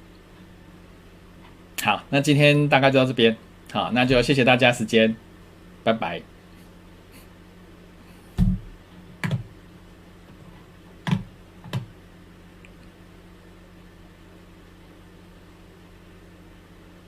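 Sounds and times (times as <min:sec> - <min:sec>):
steady low hum: 0:00.0 - 0:17.0
sharp handling knocks: 0:08.3 - 0:09.5.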